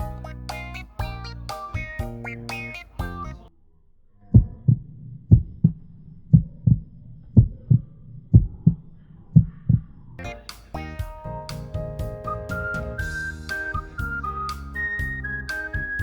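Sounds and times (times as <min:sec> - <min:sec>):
heartbeat thumps: 0:04.4 - 0:09.9.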